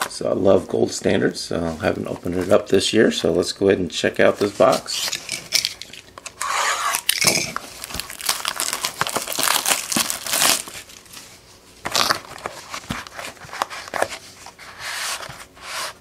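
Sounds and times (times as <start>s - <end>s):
plastic wrapping tearing and crinkling: 4.8s - 11.2s, 11.8s - 14.1s.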